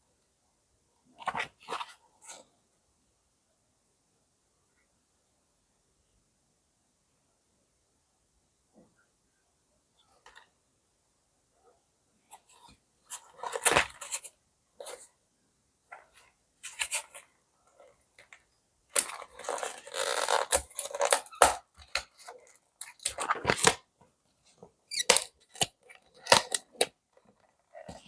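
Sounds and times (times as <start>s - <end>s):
packaging tearing and crinkling: 19.0s - 23.8s, 25.0s - 26.9s.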